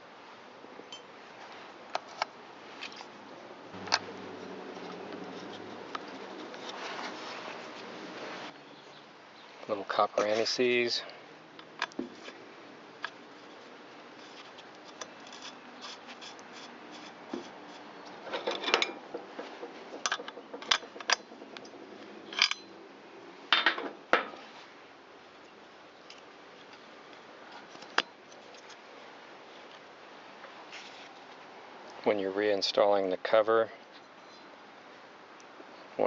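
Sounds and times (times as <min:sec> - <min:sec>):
metal and plastic parts clinking: 0:20.0 - 0:22.7.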